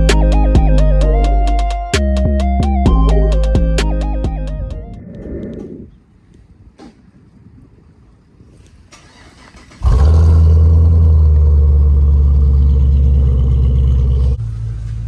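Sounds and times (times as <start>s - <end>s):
car engine deep rumble: 9.8s - 15.0s.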